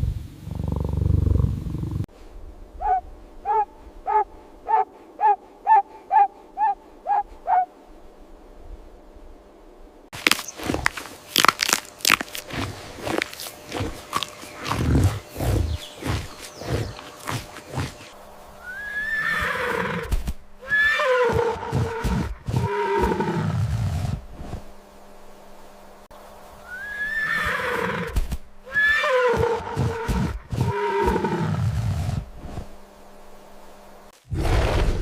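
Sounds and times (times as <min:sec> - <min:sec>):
horse whinnying: 0:18.7 - 0:23.2, 0:26.7 - 0:31.1.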